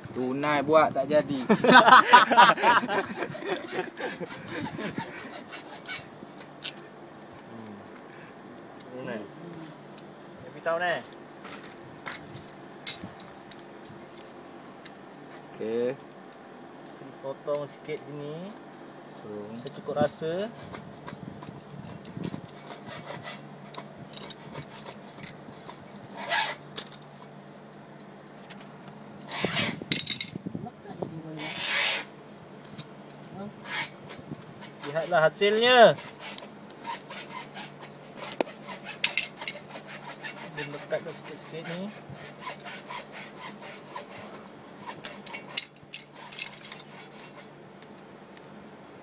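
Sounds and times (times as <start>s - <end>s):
knife scraping cable: 1.3s - 6.8s, 20.4s - 27.3s, 29.2s - 30.2s, 31.3s - 32.1s, 33.6s - 47.5s.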